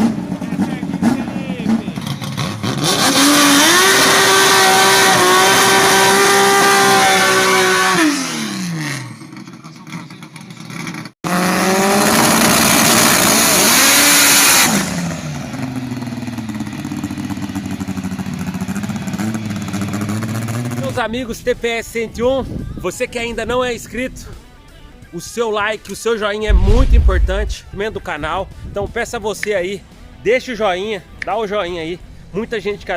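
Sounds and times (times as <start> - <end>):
drag car engines revving: 0.0 - 9.0.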